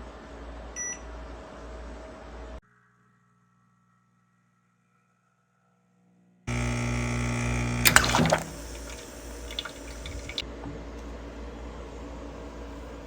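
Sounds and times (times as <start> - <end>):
espresso machine hiss: 6.5 - 10.4
espresso machine pump humming: 6.5 - 10.4
liquid dripping: 6.5 - 10.4
sharp clicks: 6.5 - 10.4.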